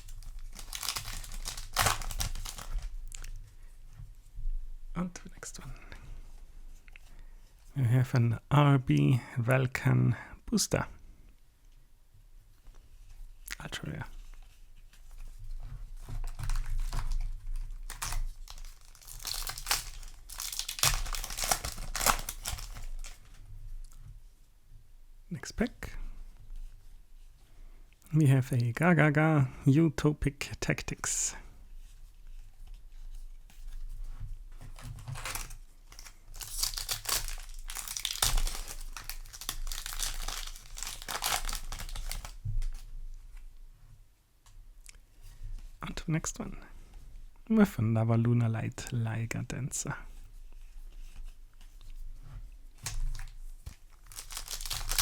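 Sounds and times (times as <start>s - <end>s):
foil wrapper crinkling and tearing: 0.0s - 3.4s, 16.0s - 23.4s, 34.6s - 42.9s, 52.8s - 55.0s.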